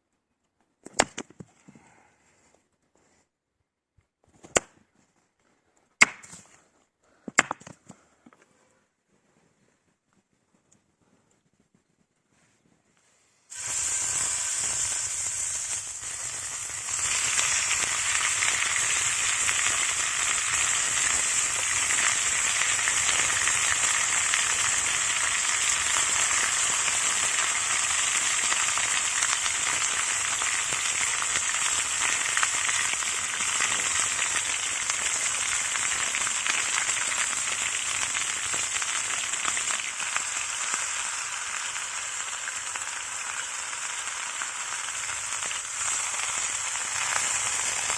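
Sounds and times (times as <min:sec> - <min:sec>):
meat sizzling in a pan: 0:13.5 - 0:47.9.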